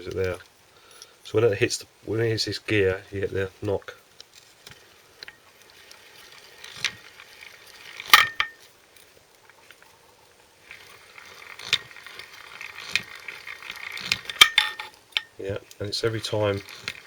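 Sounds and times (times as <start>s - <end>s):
sharp metallic gear knocks: 8.0s - 8.6s.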